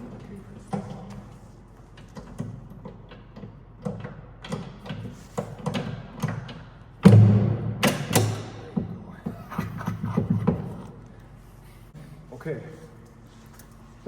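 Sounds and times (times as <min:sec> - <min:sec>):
low steady hum: 0:07.0 - 0:14.0.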